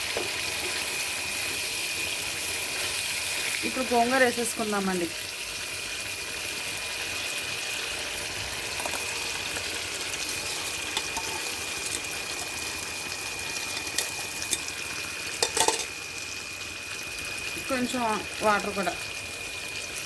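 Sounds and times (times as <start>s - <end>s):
curry sizzling in a pan: 0.0s - 20.0s
utensil clicking against pan: 10.9s - 12.6s, 13.5s - 14.7s, 15.4s - 15.9s.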